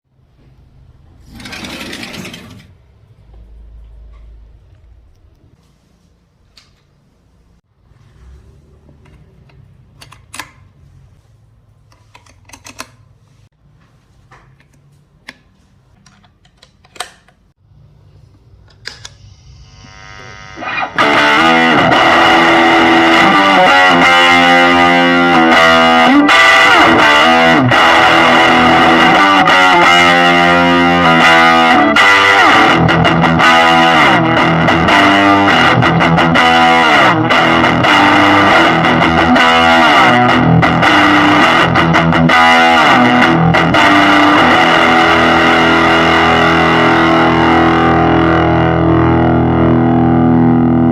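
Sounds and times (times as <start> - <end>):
distorted electric guitar: 19.1 - 50.9.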